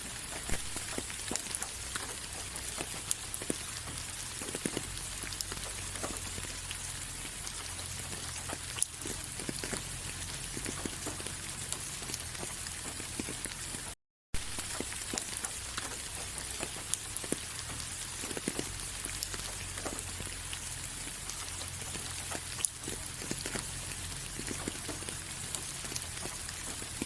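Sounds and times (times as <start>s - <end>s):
raindrops pattering: 0.0s - 27.0s.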